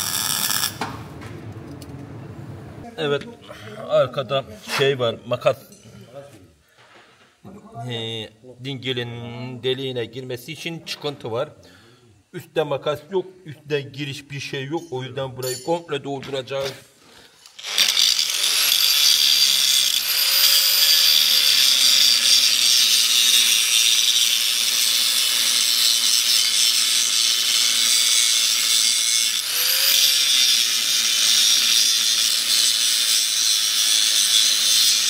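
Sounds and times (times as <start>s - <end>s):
electric grinder on steel: 0.0s - 0.9s, 17.5s - 35.0s.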